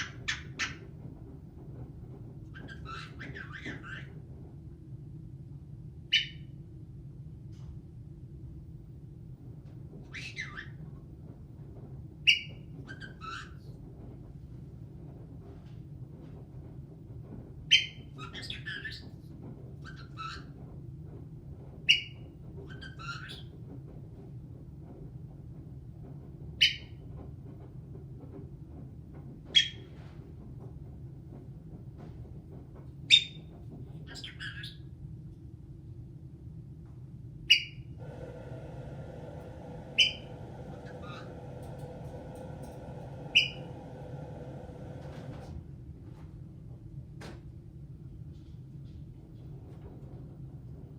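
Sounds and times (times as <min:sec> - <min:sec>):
parrot chirping: 0:02.6 - 0:04.1, 0:06.1 - 0:06.4, 0:10.1 - 0:10.8, 0:12.3 - 0:13.6, 0:17.7 - 0:19.0, 0:33.1 - 0:33.4, 0:34.0 - 0:34.8, 0:37.5 - 0:37.8, 0:40.0 - 0:41.4, 0:43.3 - 0:43.8
steady hum: 0:35.3 - 0:50.9
parrot sharp calls: 0:40.0 - 0:40.3, 0:43.3 - 0:43.7.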